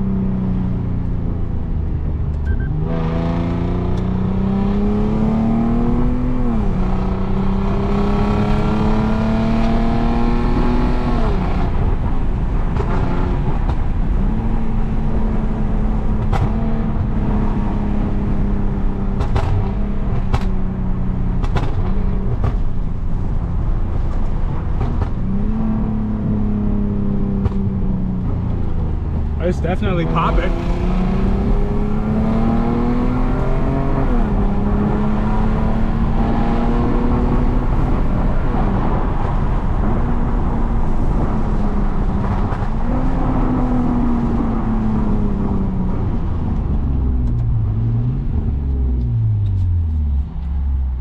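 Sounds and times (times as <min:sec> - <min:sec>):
car engine revving hard: 0:02.8 - 0:12.0, 0:29.4 - 0:45.5.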